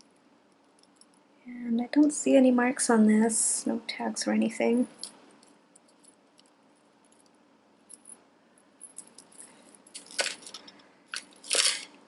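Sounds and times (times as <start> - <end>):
metal jewelry clinking: 0.0 - 1.2, 4.9 - 11.9.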